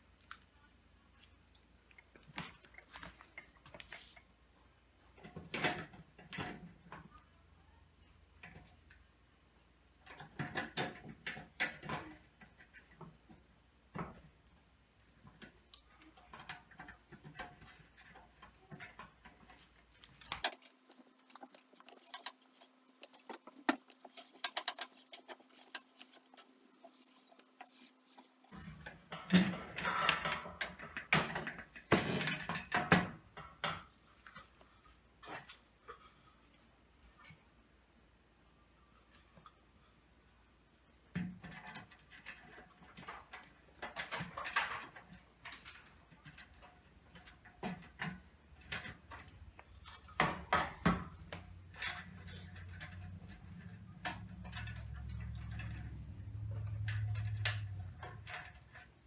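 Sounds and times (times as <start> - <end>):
metal parts clicking and rattling: 16.0 - 32.8.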